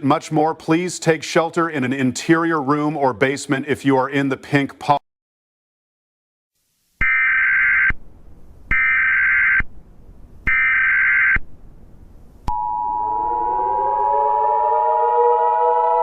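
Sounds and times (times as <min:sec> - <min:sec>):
synthesizer music: 0:12.5 - 0:16.0.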